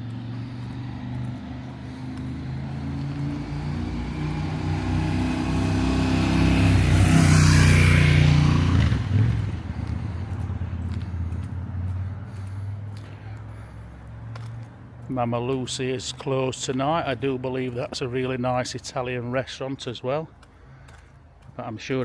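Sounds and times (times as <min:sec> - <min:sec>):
car passing by: 0:00.0 - 0:15.1.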